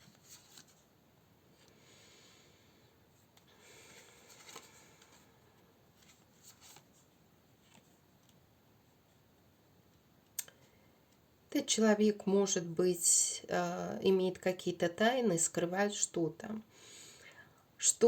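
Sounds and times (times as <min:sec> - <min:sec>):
cards rustling and tapping: 0:03.9 - 0:05.2.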